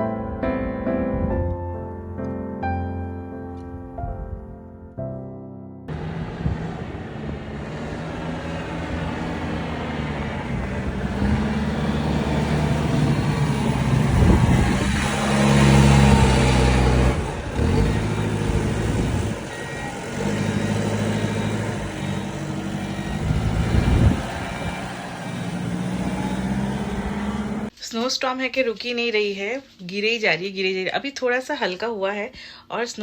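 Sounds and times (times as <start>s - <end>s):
heavy vehicle engine: 5.9s - 27.7s
wind and snow rushing: 5.9s - 27.7s.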